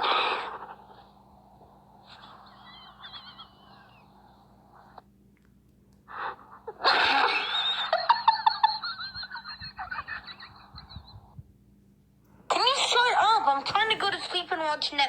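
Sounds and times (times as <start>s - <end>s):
high-pitched wheezing laughter: 2.0s - 4.4s, 6.1s - 11.4s
squeaky wheezes held-in laughter: 2.0s - 4.4s, 6.2s - 11.4s.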